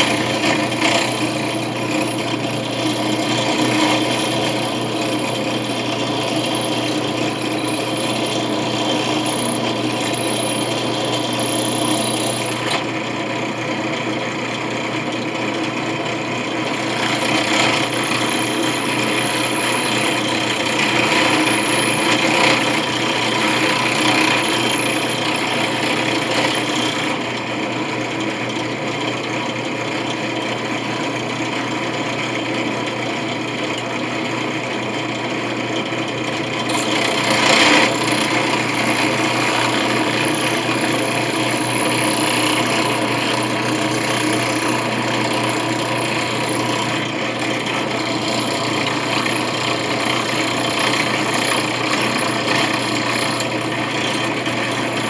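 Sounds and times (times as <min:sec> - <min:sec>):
drill bit grinding metal coin: 0:00.0 - 0:13.2, 0:15.7 - 0:27.4, 0:36.4 - 0:55.0
electric drill motor hum: 0:00.0 - 0:27.7, 0:36.1 - 0:55.0.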